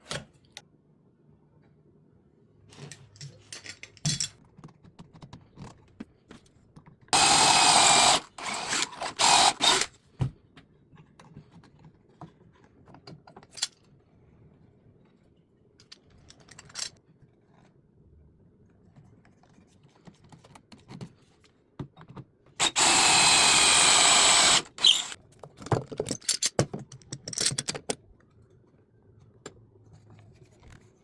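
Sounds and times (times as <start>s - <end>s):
power drill running: 7.2s - 9.9s, 22.6s - 25.2s
clicks and knocks of wood and tools: 10.1s - 14.0s, 25.2s - 31.0s.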